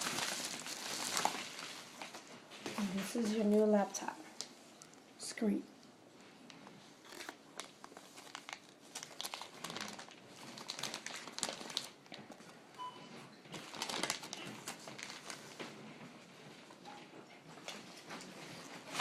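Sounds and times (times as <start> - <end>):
plastic packaging crinkling: 0.0 - 2.9, 7.0 - 12.4, 13.6 - 15.6.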